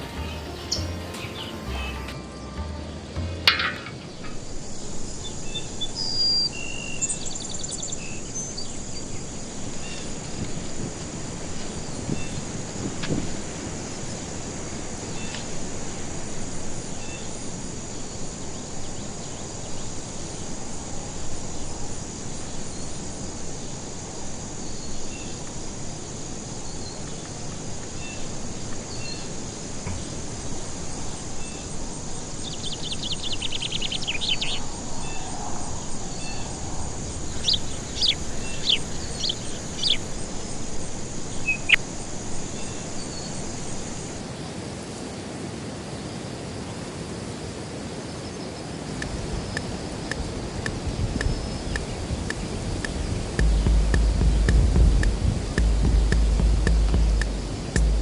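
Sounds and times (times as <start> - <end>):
bird trill: 0.0 - 4.4, 37.4 - 40.0
insects droning: 0.0 - 45.2, 46.0 - 58.0
soft insect chirp: 4.2 - 12.9, 13.6 - 44.2
sharp bird calls: 37.2 - 40.4.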